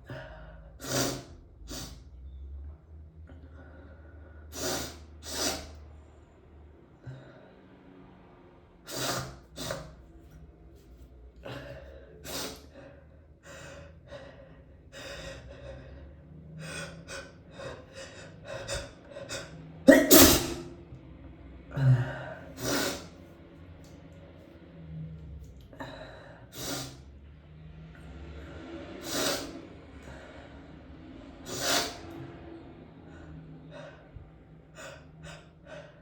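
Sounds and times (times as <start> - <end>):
person sneezing: 0.8 - 2.0, 4.6 - 5.7, 8.9 - 9.9, 19.3 - 20.7, 22.6 - 23.1.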